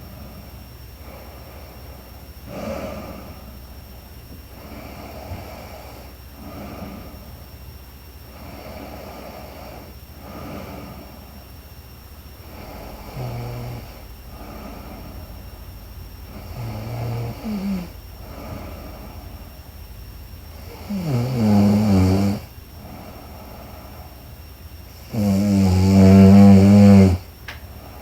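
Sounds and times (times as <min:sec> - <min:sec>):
woman snoring: 0:02.4 - 0:03.4, 0:12.4 - 0:15.4, 0:16.2 - 0:19.5, 0:20.5 - 0:24.0, 0:25.0 - 0:27.3.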